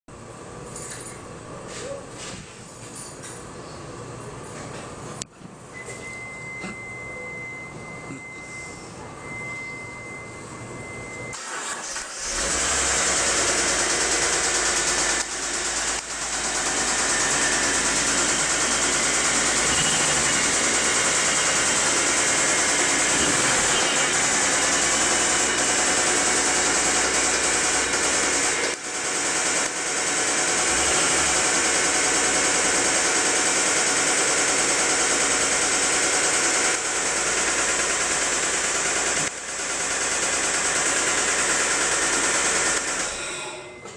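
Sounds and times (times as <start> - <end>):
car engine running: 11.4 - 36.1
fast repetitive engine knocking: 12.4 - 43.1.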